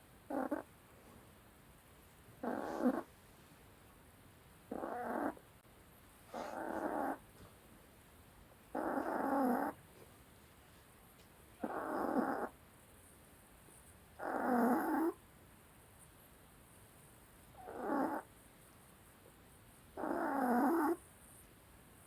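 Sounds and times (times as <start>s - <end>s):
dog snoring: 0.3s - 0.7s, 2.4s - 3.1s, 4.7s - 5.4s, 6.3s - 7.2s, 8.7s - 9.8s, 11.6s - 12.5s, 14.2s - 15.2s, 17.6s - 18.3s, 20.0s - 21.0s.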